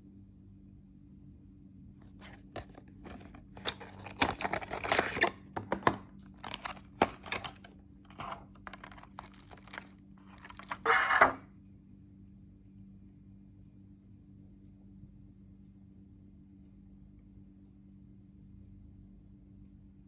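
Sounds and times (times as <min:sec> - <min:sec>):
packaging crinkling and tearing: 0:02.1 - 0:11.2.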